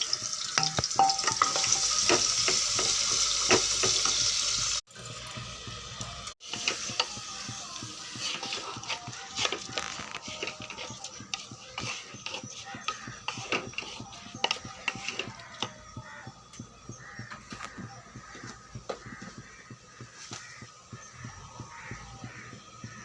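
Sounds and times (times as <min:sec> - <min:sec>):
background music: 0:03.7 - 0:23.0.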